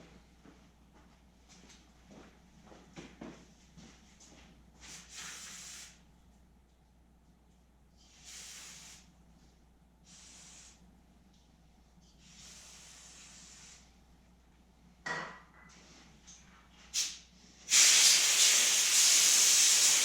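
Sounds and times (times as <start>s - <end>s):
hissing spray bursts: 5.0s - 6.0s, 8.2s - 9.1s, 10.1s - 10.8s, 17.0s - 20.0s.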